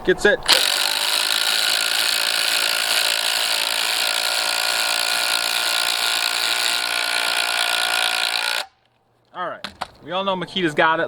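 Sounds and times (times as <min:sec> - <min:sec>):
impact drivers hammering: 0:00.5 - 0:08.9, 0:09.6 - 0:10.0.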